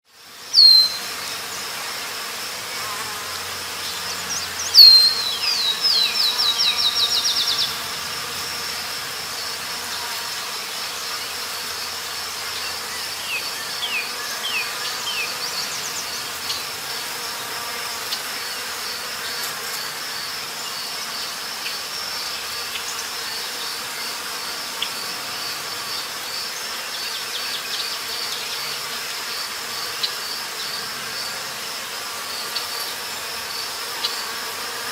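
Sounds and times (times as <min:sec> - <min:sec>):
pulsing insect chorus: 0:00.1 - 0:34.9.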